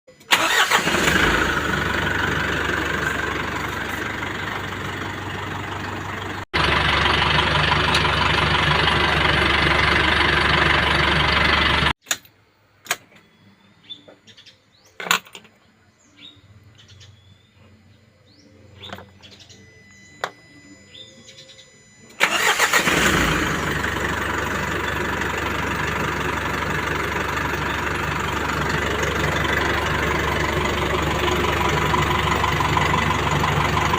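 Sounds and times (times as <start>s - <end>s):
engine starting: 0.2s - 2.5s, 22.1s - 25.0s
diesel truck engine idling: 0.3s - 12.0s, 22.2s - 33.9s
birds chirping: 1.5s - 6.4s, 13.0s - 22.9s, 23.7s - 33.9s.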